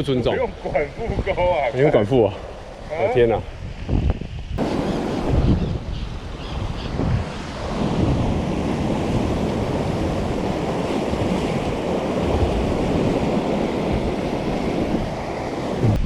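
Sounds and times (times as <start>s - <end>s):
sea surf washing against rocks: 0.0s - 16.0s
wind buffeting microphone: 0.0s - 16.0s.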